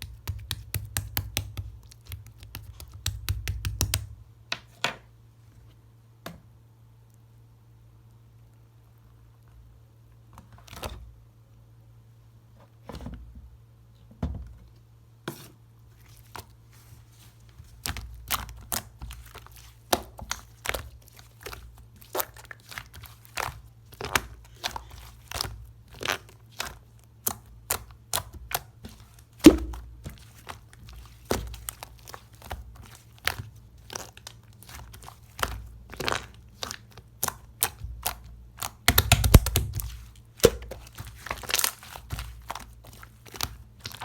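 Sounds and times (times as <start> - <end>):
slime popping and crackling: 17.8 - 44.0.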